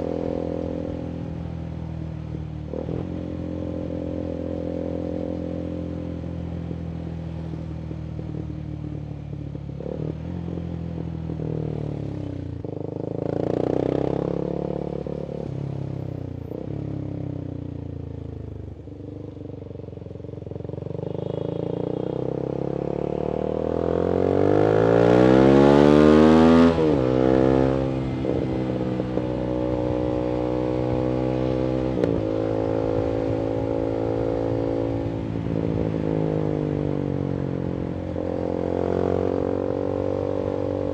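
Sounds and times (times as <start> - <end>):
motorcycle engine revving: 8.3 - 40.9.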